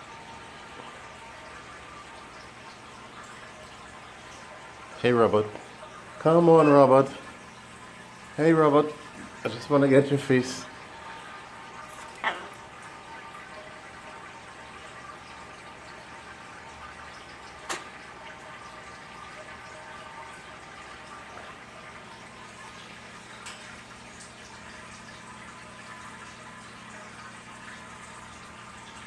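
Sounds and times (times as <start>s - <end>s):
parrot sneezing: 12.0s - 12.6s.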